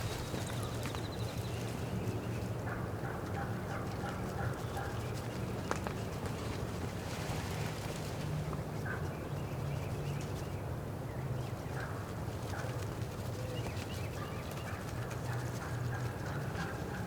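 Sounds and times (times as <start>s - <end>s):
wind buffeting microphone: 0.0s - 1.8s
songbirds chirping faintly: 0.0s - 17.0s.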